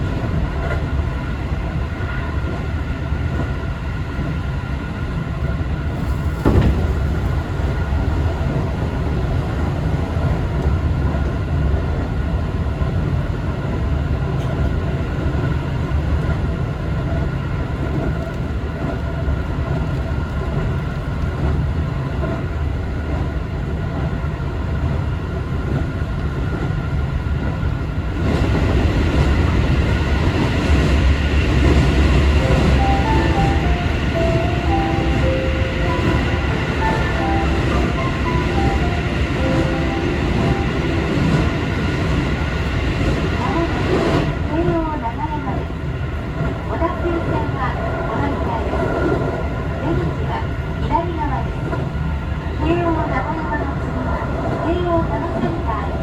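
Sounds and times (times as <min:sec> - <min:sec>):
train wheels rumbling on rail: 0:00.0 - 0:56.0.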